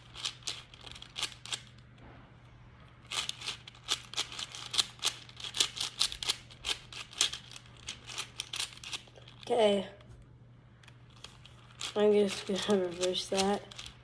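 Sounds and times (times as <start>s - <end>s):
speed cube layers clacking: 0.0s - 1.7s, 3.1s - 9.4s, 11.1s - 14.0s.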